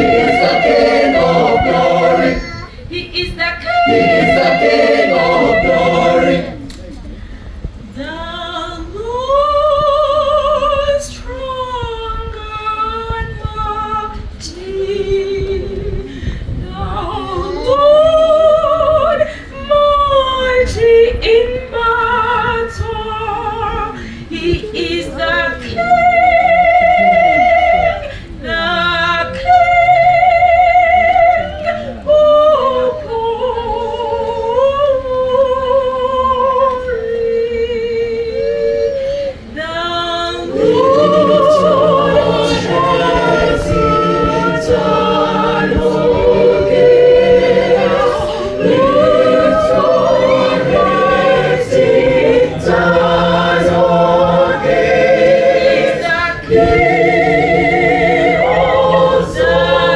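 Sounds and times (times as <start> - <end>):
choir singing: 0.0 - 6.8, 24.4 - 59.9.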